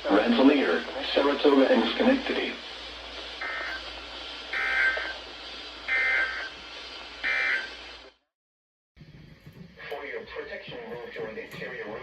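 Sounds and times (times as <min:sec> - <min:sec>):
radio hiss: 0:00.0 - 0:08.2, 0:09.8 - 0:12.0
buzzy two-tone data bursts: 0:03.4 - 0:03.9, 0:04.5 - 0:05.2, 0:05.8 - 0:06.6, 0:07.2 - 0:07.8.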